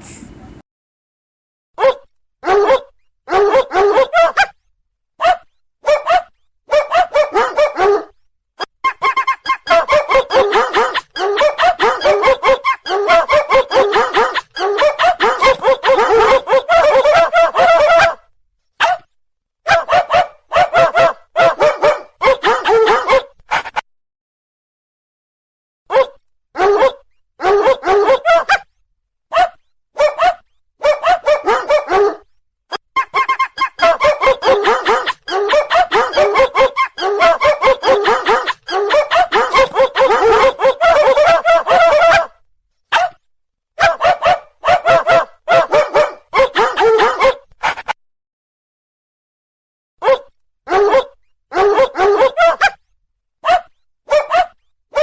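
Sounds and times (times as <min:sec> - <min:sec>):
dogs barking: 0:01.8 - 0:04.5, 0:05.2 - 0:08.1, 0:09.6 - 0:18.2, 0:18.8 - 0:19.1, 0:19.7 - 0:23.7, 0:25.9 - 0:28.6, 0:29.3 - 0:32.2, 0:33.0 - 0:42.3, 0:42.9 - 0:43.2, 0:43.8 - 0:47.9, 0:50.0 - 0:52.8, 0:53.4 - 0:55.0.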